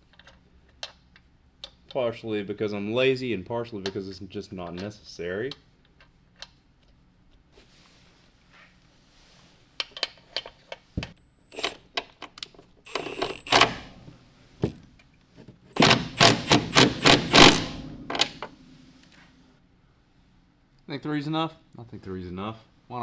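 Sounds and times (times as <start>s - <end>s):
quick clicks: 11.2s - 11.8s, 12.9s - 13.9s, 15.8s - 19.1s.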